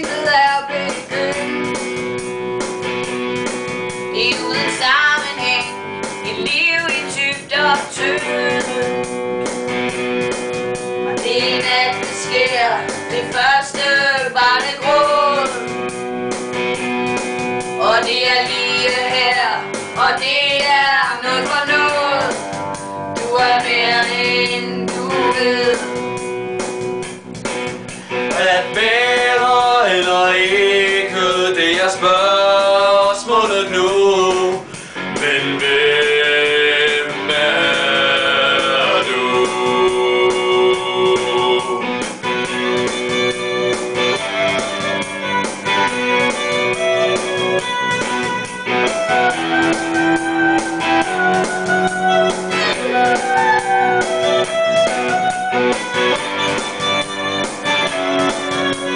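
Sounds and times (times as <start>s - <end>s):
person singing: 0.0s - 1.8s, 4.1s - 9.2s, 11.0s - 15.8s, 17.8s - 22.4s, 23.2s - 26.2s, 28.2s - 42.0s, 48.9s - 56.2s
guitar accompaniment: 0.0s - 58.9s.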